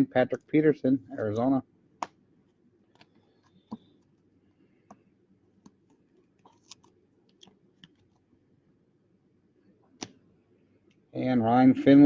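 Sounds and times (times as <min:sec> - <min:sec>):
trading cards clicking and tapping: 0:02.9 - 0:04.1.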